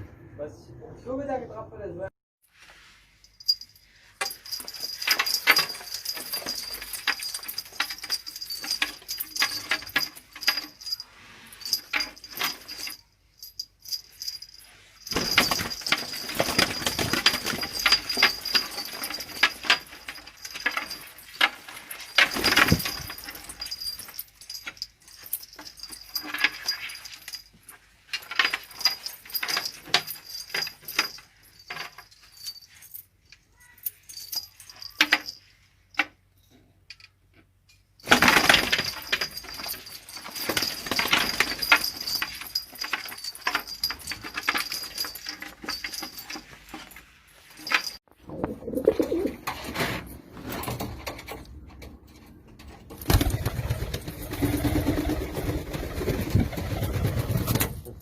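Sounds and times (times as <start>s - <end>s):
pigeons flapping wings: 15.2s - 17.8s, 53.0s - 57.8s.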